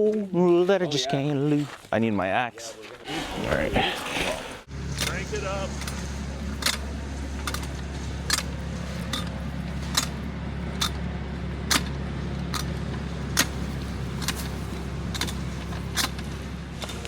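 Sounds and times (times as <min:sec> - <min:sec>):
engine idling: 0:04.6 - 0:17.0
winch ratchet clicking: 0:06.6 - 0:11.0, 0:11.7 - 0:12.8, 0:13.4 - 0:17.0.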